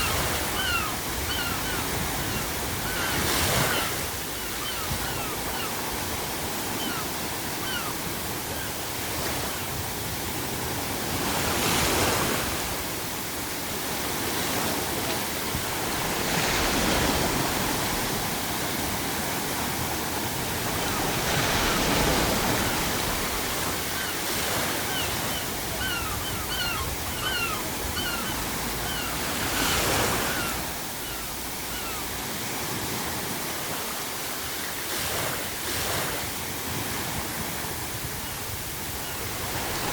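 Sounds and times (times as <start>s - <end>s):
seagulls calling: 0.0s - 9.6s, 20.5s - 32.4s
ocean waves breaking on shore: 0.0s - 39.9s.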